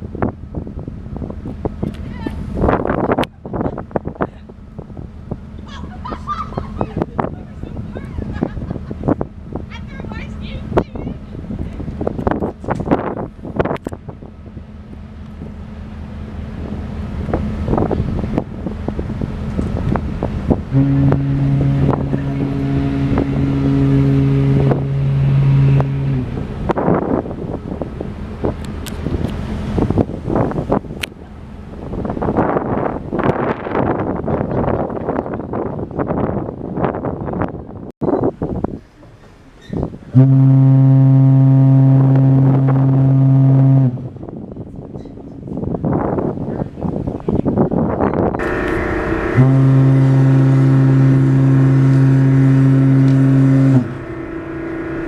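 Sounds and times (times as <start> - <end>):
wind buffeting microphone: 0.0 - 55.0
deep ship's horn blast: 15.7 - 30.8, 40.1 - 44.6, 48.3 - 55.0.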